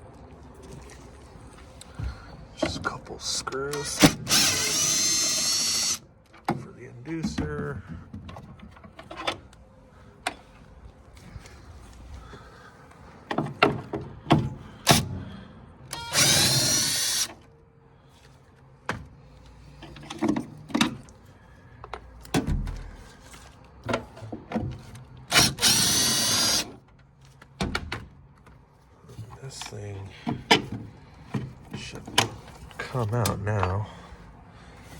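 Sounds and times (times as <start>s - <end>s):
power screwdriver whining: 3.7s - 6.0s, 15.9s - 17.4s, 25.3s - 26.8s.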